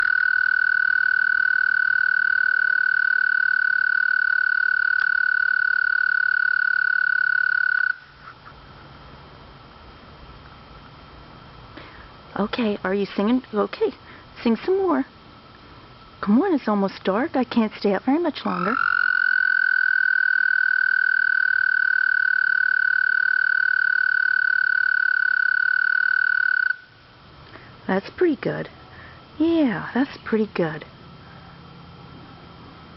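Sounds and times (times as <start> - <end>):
frog trilling: 0.0 - 8.2, 18.4 - 27.0.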